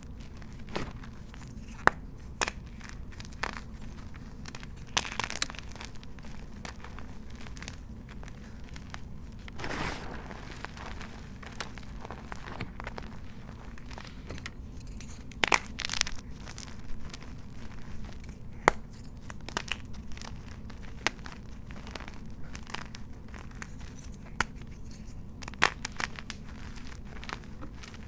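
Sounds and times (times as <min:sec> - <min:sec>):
chalk being crushed and crumbled: 0:09.6 - 0:14.2.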